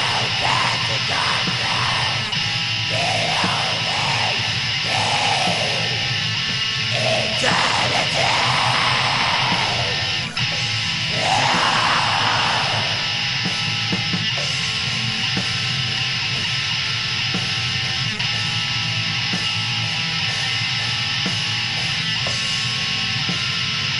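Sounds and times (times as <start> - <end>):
harsh screamed vocals: 0.0 - 13.4
distorted electric guitars: 0.0 - 23.9
drums: 0.0 - 23.9.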